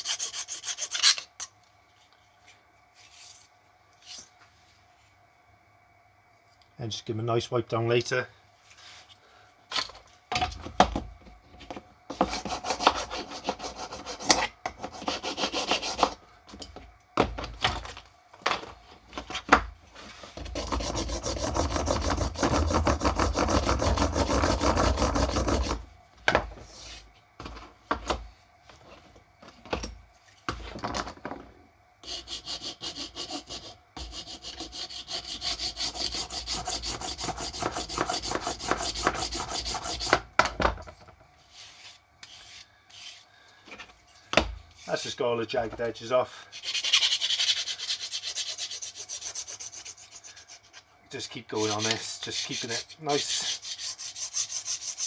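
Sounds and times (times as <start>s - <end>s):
file rasping on plastic: 0.0s - 1.3s, 12.1s - 16.2s, 20.3s - 25.9s, 32.0s - 40.3s, 46.6s - 50.9s, 51.5s - 55.0s.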